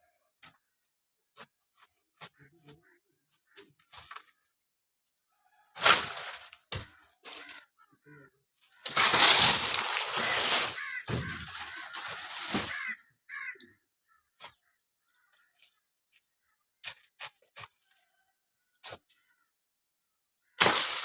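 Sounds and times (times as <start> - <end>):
wood cracking: 5.8 - 7.6, 8.8 - 13.5, 20.6 - 21.0
wood crashing: 5.8 - 7.6, 8.8 - 13.0, 20.6 - 21.0.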